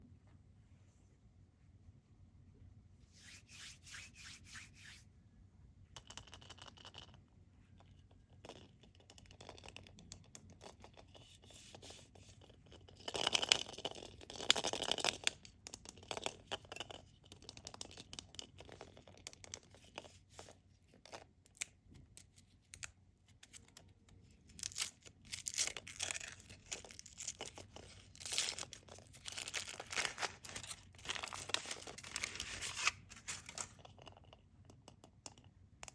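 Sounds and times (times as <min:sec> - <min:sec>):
rubbing and scratching: 0:03.0 - 0:05.1, 0:08.0 - 0:21.3, 0:23.3 - 0:34.4
foil wrapper tearing and crinkling: 0:24.6 - 0:33.7.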